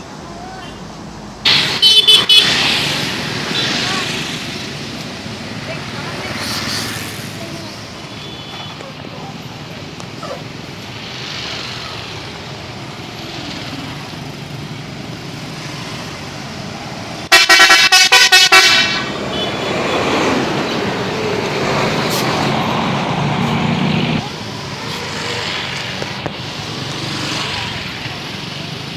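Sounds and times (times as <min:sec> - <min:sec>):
road traffic noise: 0:00.0 - 0:28.9
musical bus horn notes: 0:17.3 - 0:19.6.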